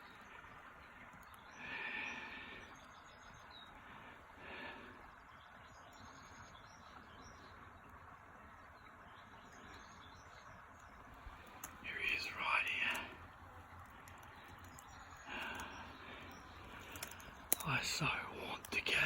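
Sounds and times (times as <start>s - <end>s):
faint bird calls: 0.0s - 19.0s.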